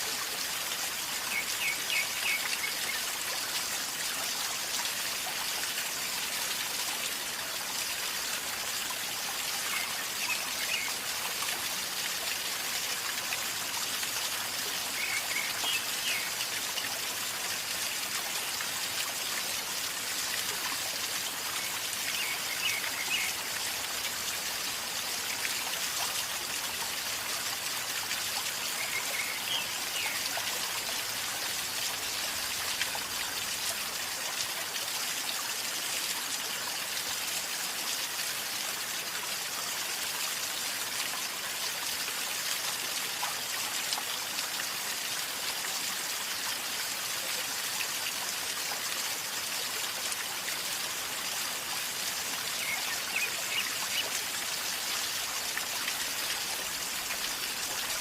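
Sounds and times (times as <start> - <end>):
river water flowing and gurgling: 0.0 - 58.0.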